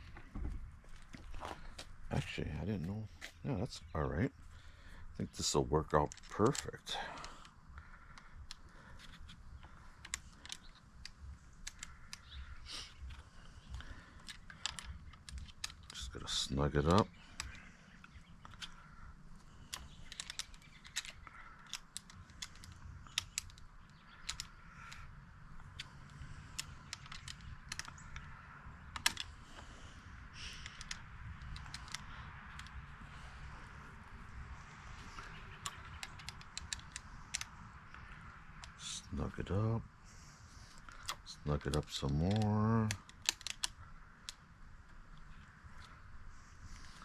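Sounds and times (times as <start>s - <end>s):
light clicks and taps of tool: 35.0s - 38.0s.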